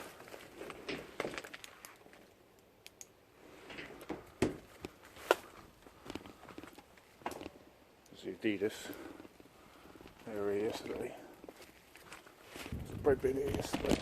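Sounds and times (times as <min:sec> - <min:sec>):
faint rustling: 0:03.4 - 0:14.0.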